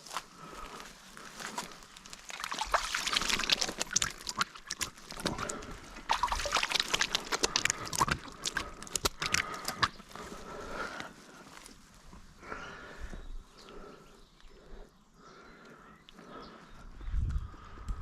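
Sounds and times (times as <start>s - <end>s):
water splashing and dripping: 2.2s - 9.9s.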